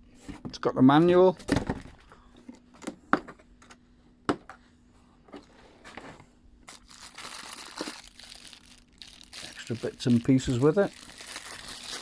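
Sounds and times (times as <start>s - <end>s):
packaging rustling: 6.6s - 12.0s.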